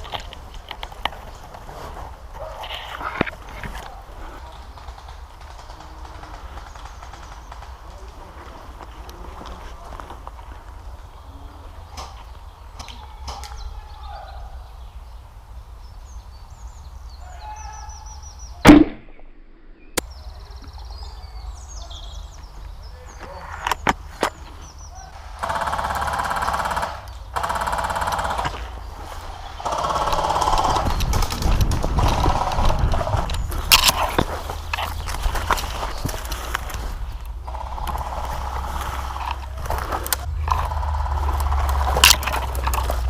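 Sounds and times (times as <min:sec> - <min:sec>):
rustling noise: 0:00.0 - 0:04.4, 0:30.8 - 0:37.4, 0:38.0 - 0:43.0
airsoft rifle firing crack: 0:18.6 - 0:20.0.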